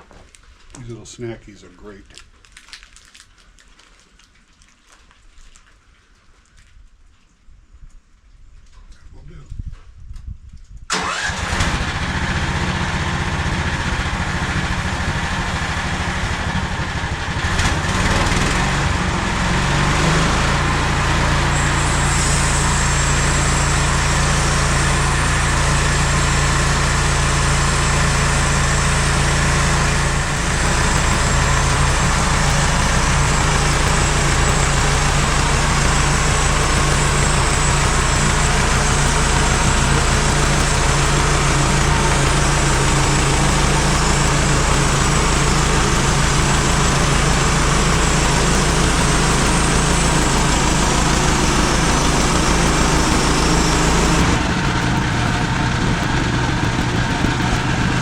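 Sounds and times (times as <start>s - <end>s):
sawmill engine running: 10.9s - 58.0s
thin high whine: 21.2s - 26.3s, 29.7s - 58.0s.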